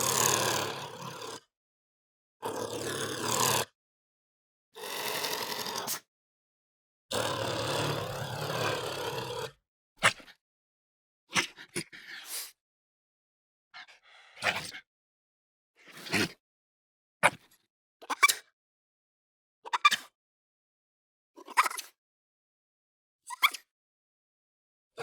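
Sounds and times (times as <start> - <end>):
honey badger growling: 7.1 - 9.6.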